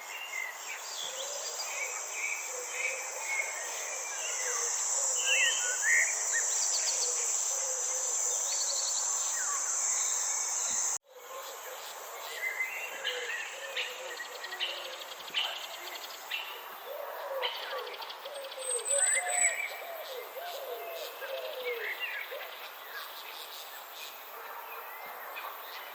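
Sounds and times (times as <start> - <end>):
high-pitched insect drone: 1.6 - 11.0.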